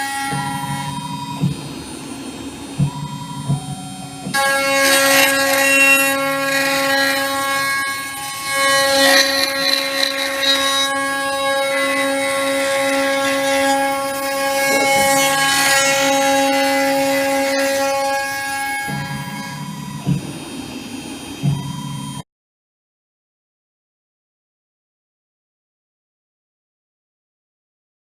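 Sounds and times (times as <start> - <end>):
cnc router spindle whine: 0.0 - 22.2
router bit cutting wood: 4.2 - 19.7.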